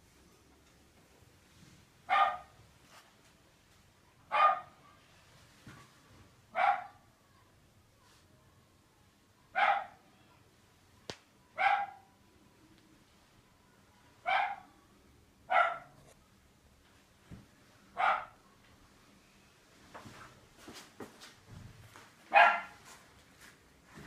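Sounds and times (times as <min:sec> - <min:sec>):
dog barking: 0:02.1 - 0:02.6, 0:04.3 - 0:04.9, 0:06.5 - 0:07.1, 0:09.5 - 0:10.0, 0:11.6 - 0:12.1, 0:14.2 - 0:14.8, 0:15.5 - 0:16.0, 0:18.0 - 0:18.4, 0:22.3 - 0:22.8.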